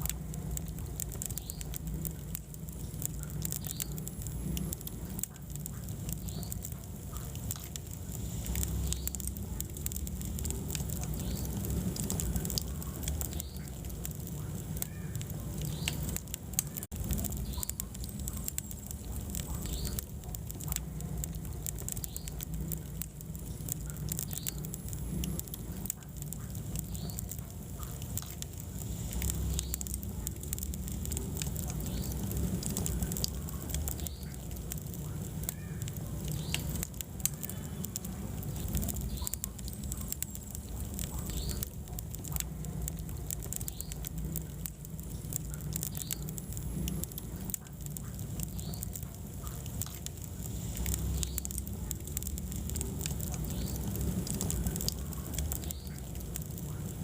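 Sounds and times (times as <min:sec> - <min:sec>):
fire crackling and popping: 0:00.0 - 0:57.0
low rumble of flames: 0:00.0 - 0:57.0
high squeaks from burning logs: 0:01.0 - 0:57.0.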